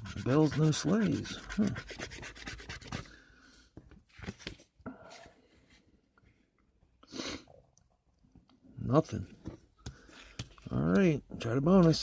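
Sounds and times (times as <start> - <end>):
scratching lottery ticket: 0.0 - 3.1.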